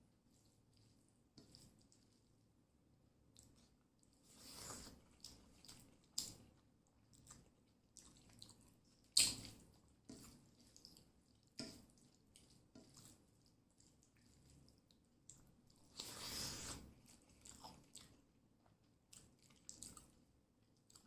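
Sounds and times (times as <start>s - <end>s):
wet food squelches and smacks: 0.3s - 2.5s, 3.1s - 21.0s.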